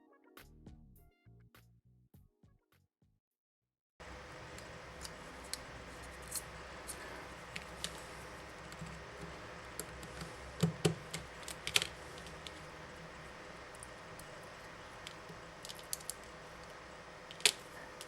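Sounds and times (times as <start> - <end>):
room hum: 4.0 - 18.0
small clicks and scrapes: 4.0 - 18.0.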